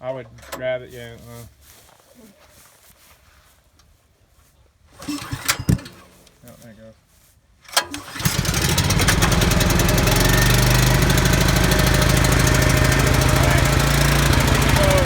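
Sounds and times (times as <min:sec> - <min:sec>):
generator engine running: 0:07.9 - 0:15.0.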